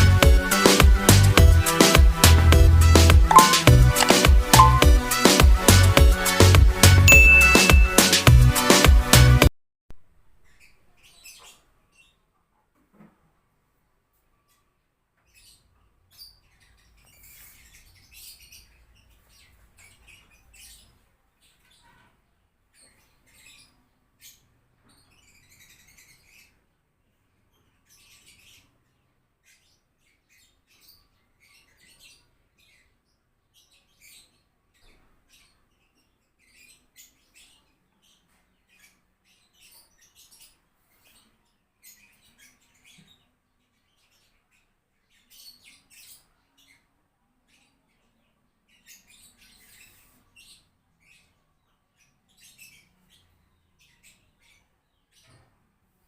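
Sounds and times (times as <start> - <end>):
small birds chirping: 3.2 - 5.3, 7.1 - 8.2, 14.3 - 56.0.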